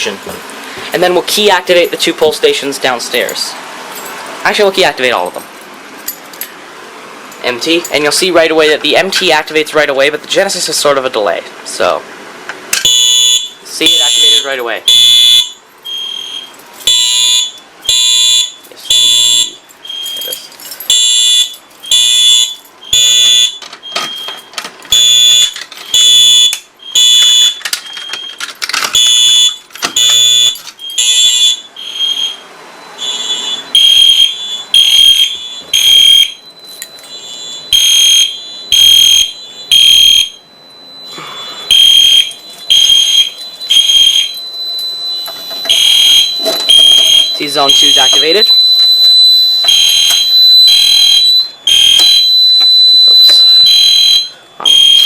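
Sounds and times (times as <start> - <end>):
pulsed fire alarm horn blasts: 12.8 - 20.2, 20.9 - 23.6, 24.9 - 27.6, 29.0 - 55.0.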